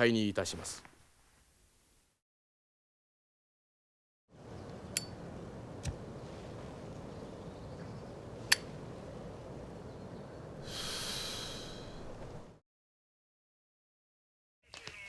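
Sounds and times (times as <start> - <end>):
low steady hiss: 4.4 - 12.6
sharp click: 8.5 - 8.7
soft breathy exhale: 10.6 - 12.5.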